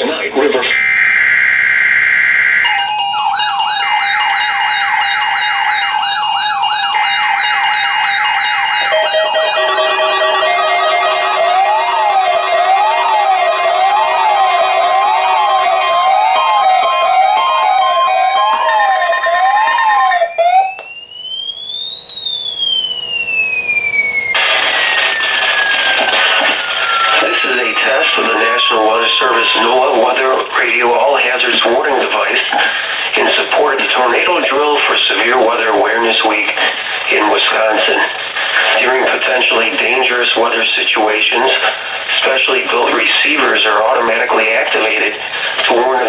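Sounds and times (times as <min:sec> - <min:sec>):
buzzy data bursts: 0:00.0 - 0:31.8
sweeping siren-like alarm: 0:00.6 - 0:31.2
steady alert tones: 0:00.8 - 0:30.8.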